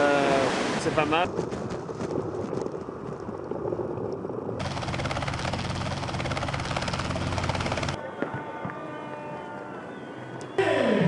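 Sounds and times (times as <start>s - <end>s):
water rushing: 0.0s - 1.4s, 3.3s - 8.0s
helicopter engine hum: 4.6s - 8.0s
helicopter rotor chopping: 4.6s - 8.0s.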